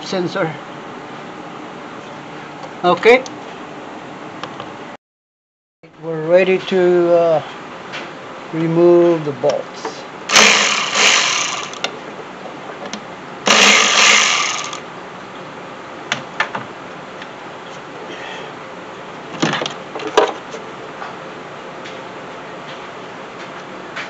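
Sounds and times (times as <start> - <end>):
power tool running: 10.3 - 11.8, 13.5 - 14.8.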